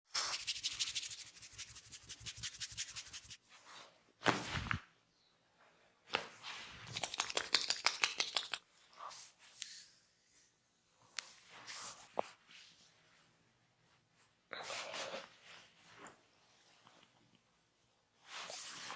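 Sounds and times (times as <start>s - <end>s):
fingers scratching through hair: 0.2s - 3.4s, 6.9s - 8.6s.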